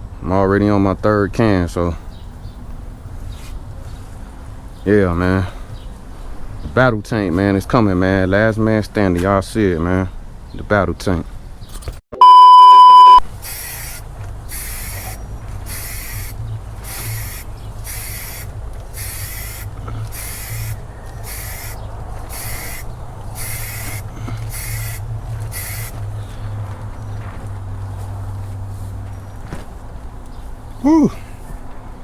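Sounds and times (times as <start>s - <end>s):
loud single-tone beep: 12.2s - 13.2s
spray can hissing bursts: 13.3s - 26.0s.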